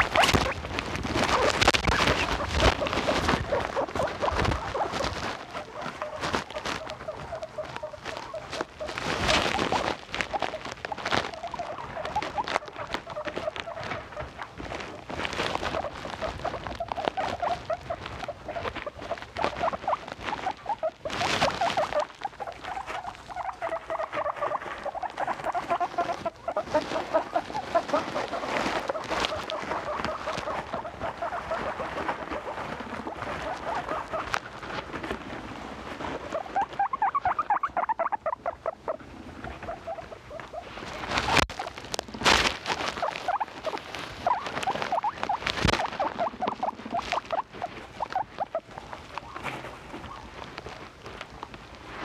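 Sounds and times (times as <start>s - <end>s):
guinea pigs squeaking: 0.0s - 52.0s.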